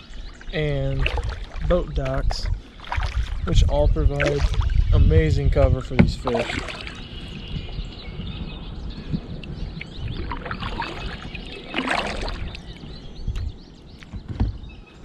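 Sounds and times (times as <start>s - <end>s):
water sloshing against kayak: 0.0s - 4.9s, 5.8s - 7.3s, 9.5s - 13.2s
water splash: 0.7s - 1.8s, 2.8s - 3.4s, 4.1s - 4.8s, 6.0s - 7.1s, 10.2s - 12.8s.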